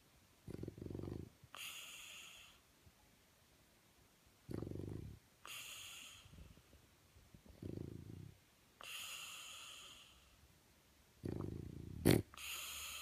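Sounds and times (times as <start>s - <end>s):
dog snoring: 0.4s - 2.6s, 4.5s - 6.5s, 7.5s - 10.3s, 11.2s - 13.0s.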